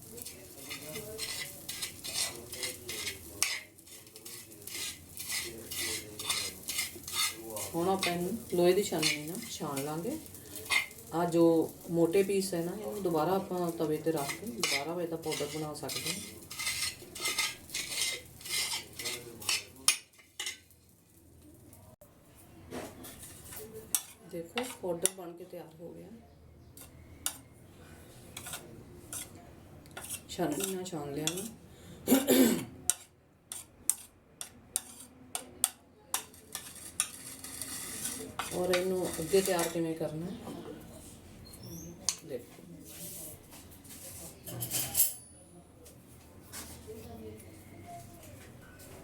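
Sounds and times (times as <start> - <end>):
utensil grinding powder on metal: 0.1 - 11.1, 11.8 - 20.0, 30.0 - 31.5, 36.2 - 39.8.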